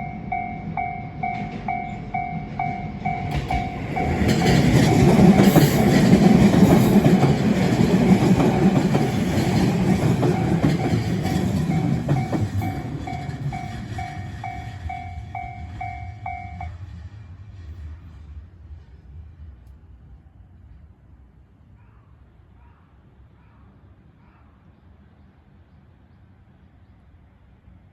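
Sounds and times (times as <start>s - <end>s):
crossing warning bell: 0.0s - 16.9s
train passing: 0.0s - 21.7s.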